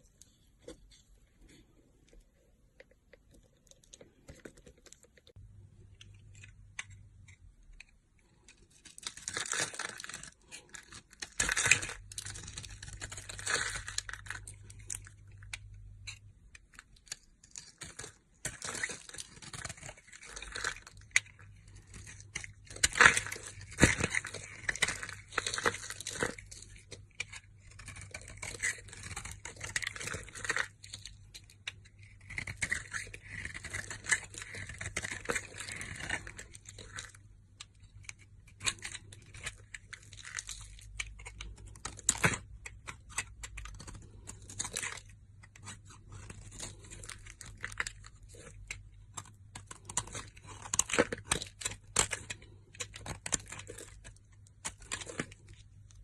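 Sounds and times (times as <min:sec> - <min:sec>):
crisp crackling and crunching: 0:02.8 - 0:56.0.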